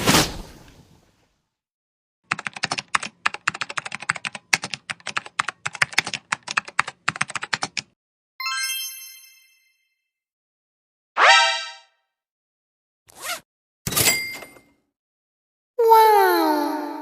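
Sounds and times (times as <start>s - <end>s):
keyboard typing: 2.3s - 8.0s.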